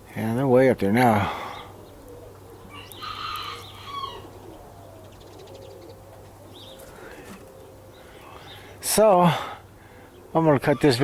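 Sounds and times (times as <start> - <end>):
birds chirping: 0.0 - 11.0
pigeons cooing: 0.8 - 11.0.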